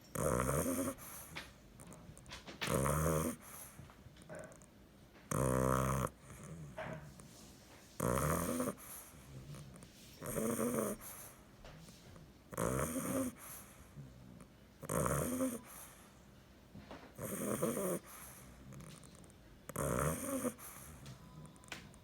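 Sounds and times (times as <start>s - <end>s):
puppy snoring: 0.0s - 7.4s, 8.0s - 16.2s, 17.0s - 22.0s
puppy breathing quietly: 0.1s - 4.6s, 5.3s - 21.8s.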